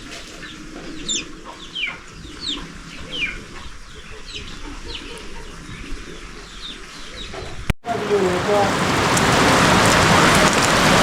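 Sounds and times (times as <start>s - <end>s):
chickens chirping: 0.0s - 8.4s.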